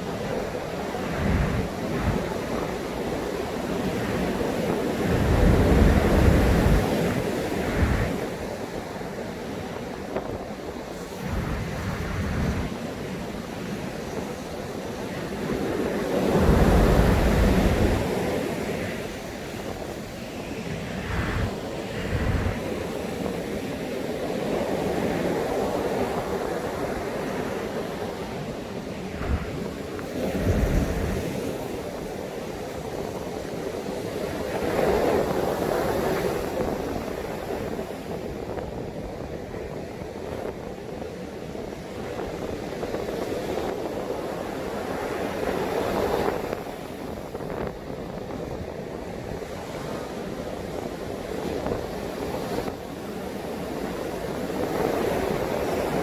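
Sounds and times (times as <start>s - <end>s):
surf breaking on beach: 0.0s - 40.1s
wind buffeting microphone: 0.0s - 56.0s.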